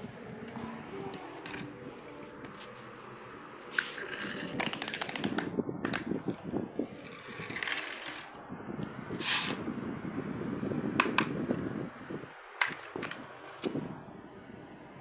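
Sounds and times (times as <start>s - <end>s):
packaging handling noises: 0.0s - 3.0s, 3.6s - 6.1s
toy clicking and rattling: 3.7s - 6.2s, 7.0s - 8.4s.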